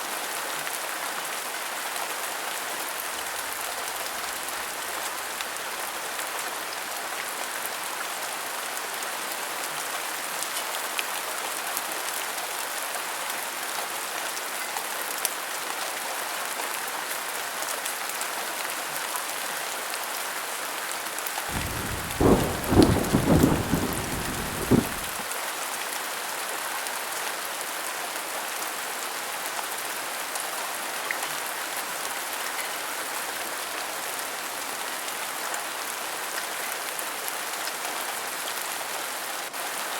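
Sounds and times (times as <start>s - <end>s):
steady rain: 0.0s - 39.9s
thunder rumbling and cracking: 21.5s - 25.2s.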